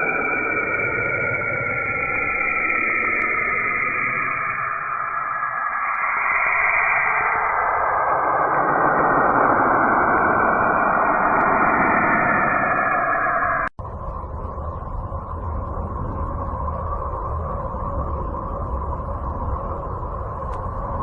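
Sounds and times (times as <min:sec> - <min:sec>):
deep rumble: 0:07.3 - 0:21.0.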